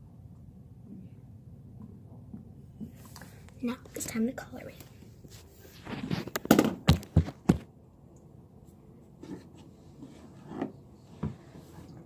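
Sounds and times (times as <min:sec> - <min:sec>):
objects set down on a table: 0:05.9 - 0:07.7.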